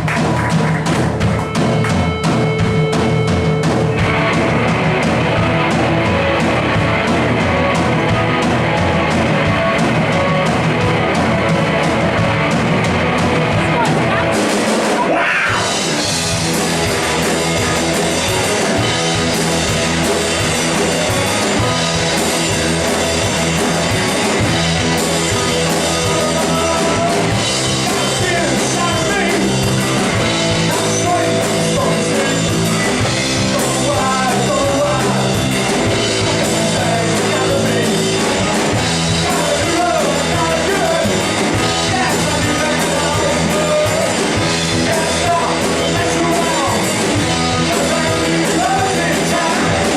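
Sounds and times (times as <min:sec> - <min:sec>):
electric guitar: 0:00.0 - 0:49.9
punk rock band playing: 0:00.0 - 0:49.9
person singing: 0:25.2 - 0:49.9.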